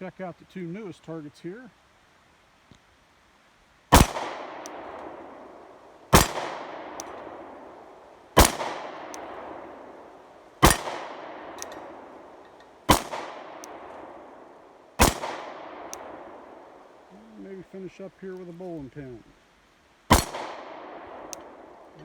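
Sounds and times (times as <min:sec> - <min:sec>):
pistol shots with echo: 0:03.9 - 0:14.4, 0:15.0 - 0:16.6, 0:20.1 - 0:21.8.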